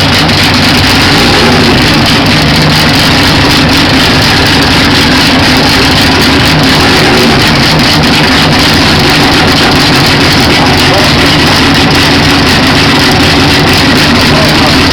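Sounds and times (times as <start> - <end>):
car engine running loud: 0.0 - 14.9.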